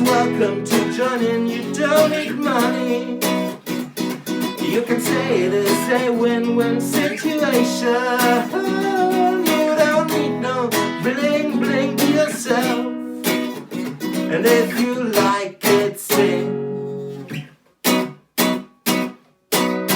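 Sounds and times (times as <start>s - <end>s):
person singing: 0.0s - 3.6s, 4.6s - 13.5s, 14.3s - 16.6s
acoustic guitar strumming: 0.0s - 19.9s.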